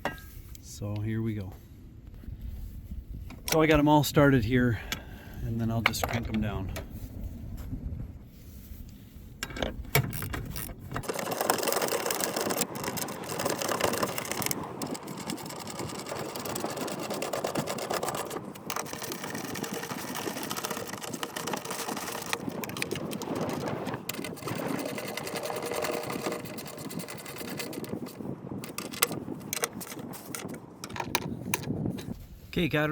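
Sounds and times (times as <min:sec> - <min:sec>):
socket wrench ratcheting: 0:09.4 - 0:31.8.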